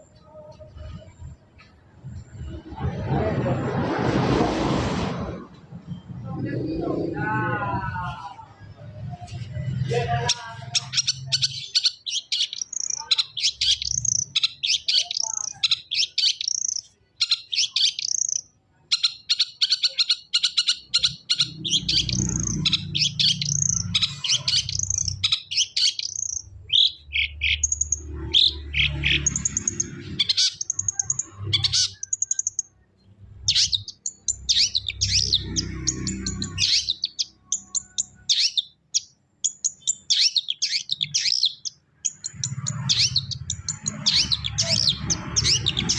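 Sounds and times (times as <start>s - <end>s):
low rumble: 0.6s - 10.0s
bird singing scratchy chatter: 5.8s - 45.9s.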